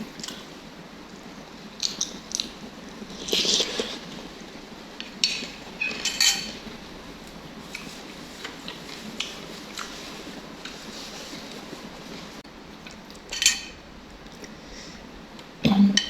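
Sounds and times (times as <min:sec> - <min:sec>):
utensils clinking against bowl: 0:05.0 - 0:06.7, 0:13.1 - 0:13.8.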